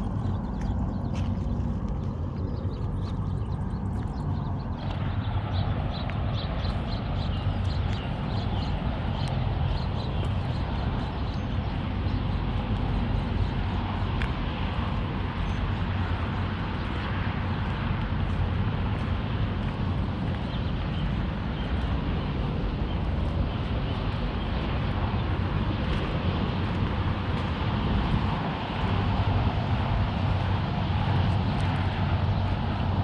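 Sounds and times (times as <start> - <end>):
footsteps crunching on gravel: 0.0 - 33.0
steady low rumble: 0.0 - 33.0.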